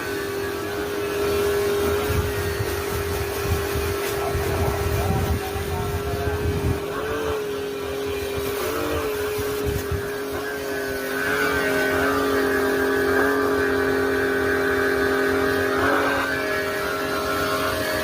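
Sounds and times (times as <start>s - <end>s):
pressure washer motor humming: 0.0s - 18.0s
water spray hissing: 0.0s - 18.0s.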